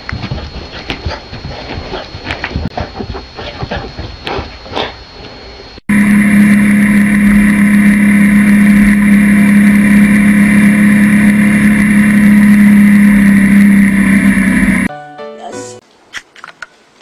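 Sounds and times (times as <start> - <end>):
loud motor drone: 5.7 - 14.9.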